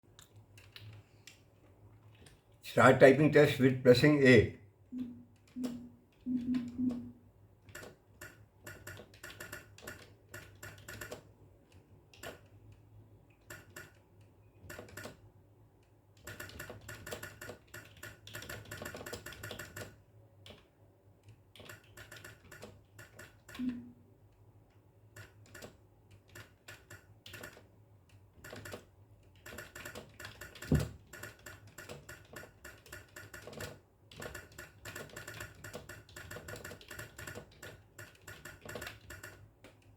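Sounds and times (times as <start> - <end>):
keyboard typing: 5.0 - 12.6, 13.4 - 15.2, 16.2 - 23.9, 25.1 - 27.7, 28.4 - 39.9.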